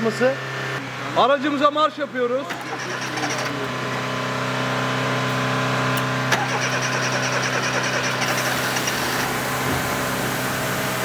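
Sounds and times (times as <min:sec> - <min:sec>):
car engine running: 0:02.6 - 0:11.0.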